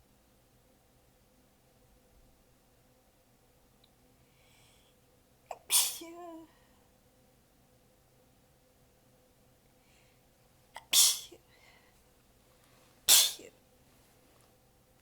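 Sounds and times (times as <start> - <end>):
woman sneezing: 5.5 - 6.5, 10.8 - 11.4, 13.1 - 13.5.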